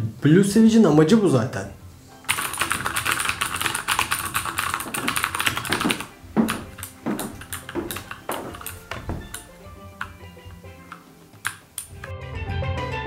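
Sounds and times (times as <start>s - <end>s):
mechanical keyboard typing: 2.3s - 10.2s, 10.9s - 12.1s.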